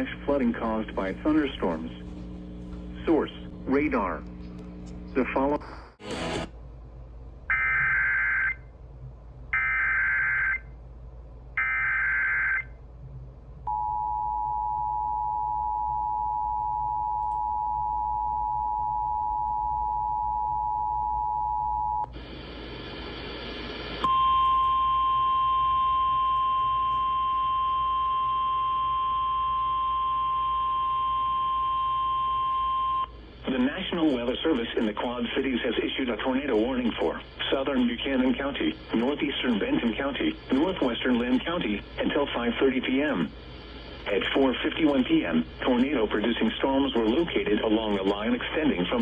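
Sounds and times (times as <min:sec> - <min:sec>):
steady alarm tone: 0:24.0 - 0:33.2.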